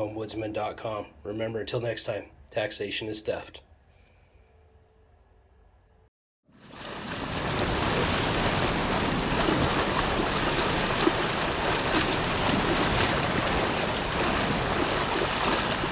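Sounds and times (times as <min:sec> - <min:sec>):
rushing water: 0:06.6 - 0:15.9.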